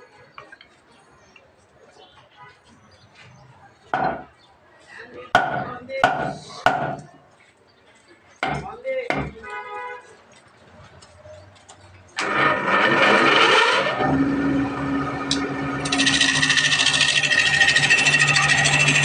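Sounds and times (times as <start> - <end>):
sharp knocks: 8.4 - 9.4
power tool whining: 12.2 - 19.0.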